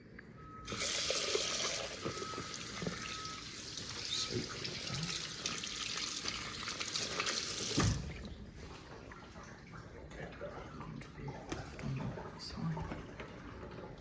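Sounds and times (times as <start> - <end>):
water running from tap: 0.7 - 8.3.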